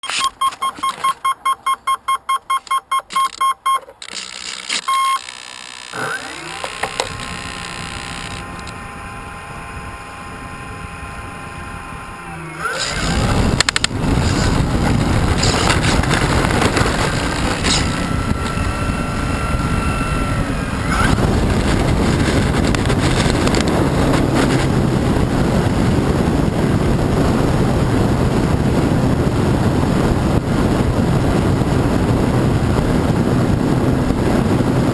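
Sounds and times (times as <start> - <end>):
short electronic beeps: 0.0 - 6.6
motor whine: 4.0 - 34.9
propeller and wind rush: 6.0 - 34.9.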